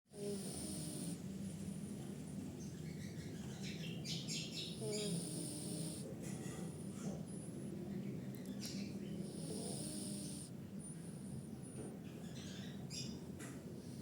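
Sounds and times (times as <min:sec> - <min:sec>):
cat snoring low rumble: 0:00.1 - 0:02.1, 0:04.7 - 0:07.7, 0:09.2 - 0:11.5.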